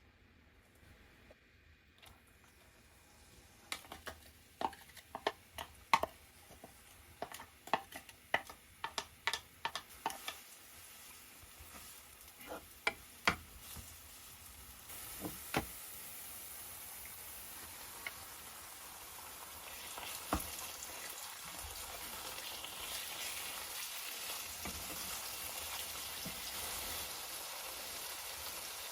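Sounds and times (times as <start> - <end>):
utensil clinking against cookware: 7.2 - 10.4.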